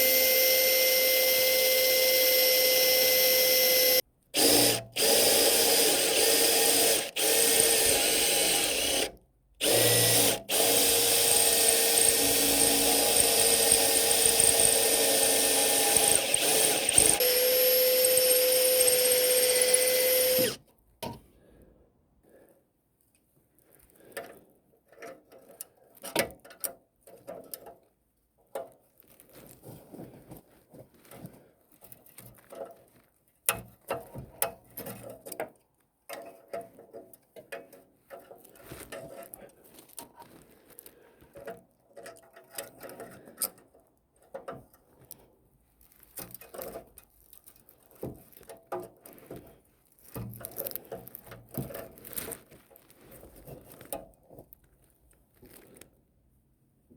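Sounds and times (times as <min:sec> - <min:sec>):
hand tools on metal parts: 0:00.0 - 0:21.2, 0:33.5 - 0:40.4, 0:41.3 - 0:54.6.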